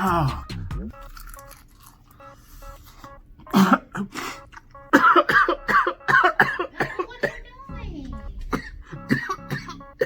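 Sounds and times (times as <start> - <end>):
quiet background music: 0.0 - 10.0
person coughing: 3.4 - 7.6, 8.4 - 10.0.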